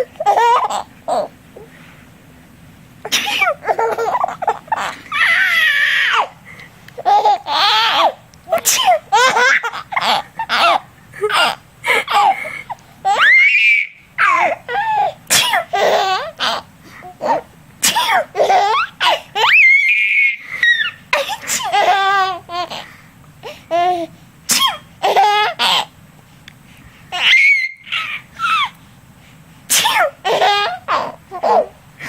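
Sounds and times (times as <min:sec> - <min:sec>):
baby laughing and squealing: 0:00.0 - 0:01.3, 0:03.1 - 0:06.3, 0:07.0 - 0:17.5, 0:18.1 - 0:22.8, 0:25.0 - 0:25.9, 0:27.1 - 0:28.8, 0:29.8 - 0:31.8
adult sneezing: 0:03.1 - 0:03.6, 0:08.5 - 0:09.0, 0:15.3 - 0:15.7, 0:17.8 - 0:18.3, 0:21.2 - 0:21.8, 0:24.5 - 0:24.9, 0:29.7 - 0:30.2.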